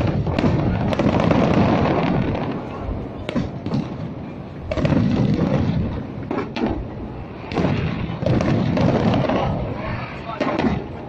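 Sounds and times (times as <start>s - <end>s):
fireworks booming: 0.0s - 11.0s
low rolling rumble: 0.0s - 11.0s.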